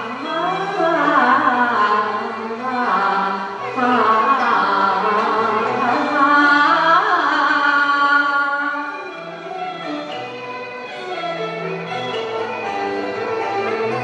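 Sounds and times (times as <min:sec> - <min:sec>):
opera singing voice: 0:00.0 - 0:09.0
instrumental accompaniment: 0:00.0 - 0:14.0.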